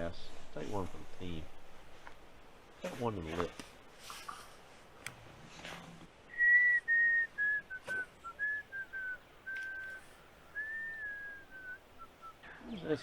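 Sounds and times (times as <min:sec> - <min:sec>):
person whistling a tune: 0:06.3 - 0:12.3
faint click: 0:09.5 - 0:10.0.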